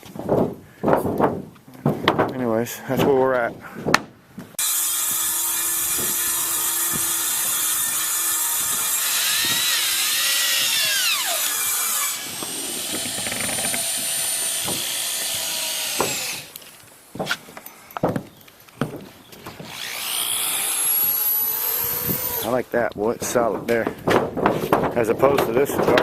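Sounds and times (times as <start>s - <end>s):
power saw cutting plywood: 4.6s - 17.4s, 19.5s - 22.7s.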